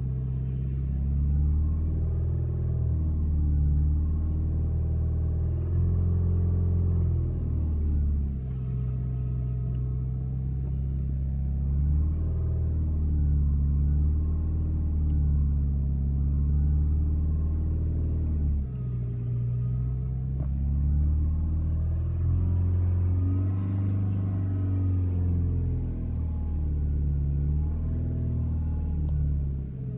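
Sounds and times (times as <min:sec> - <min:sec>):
car engine drone: 0:00.0 - 0:29.9.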